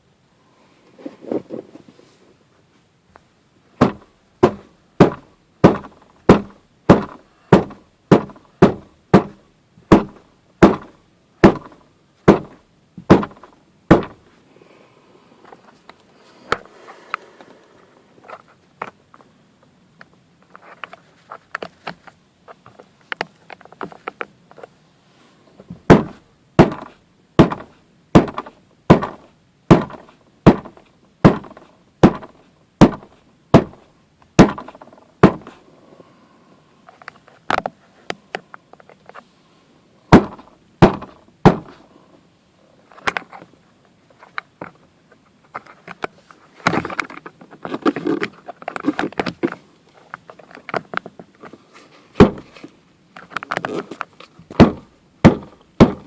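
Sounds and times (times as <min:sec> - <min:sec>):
knocks on car dashboard: 0:03.8 - 0:14.2, 0:25.9 - 0:33.8, 0:52.2 - 0:52.4, 0:54.6 - 0:56.0.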